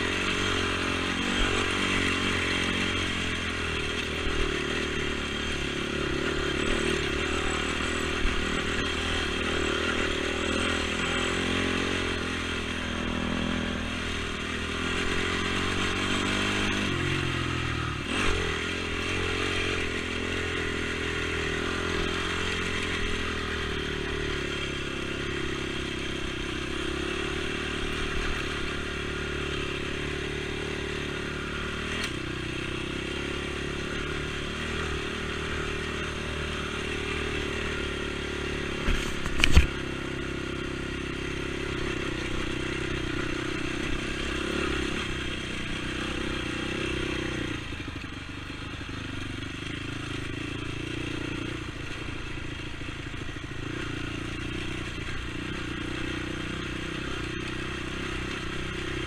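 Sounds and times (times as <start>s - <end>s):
atv engine running: 0.0s - 59.0s.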